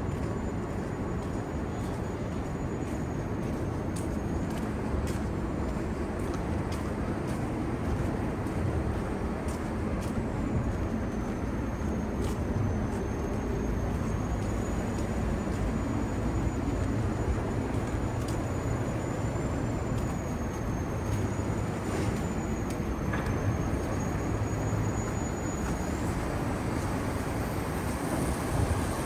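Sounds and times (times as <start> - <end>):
road traffic rumble: 0.0 - 29.0.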